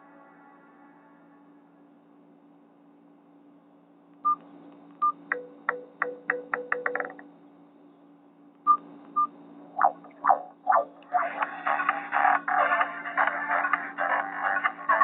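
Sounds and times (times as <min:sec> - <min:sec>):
phone ringtone: 0:05.3 - 0:07.2.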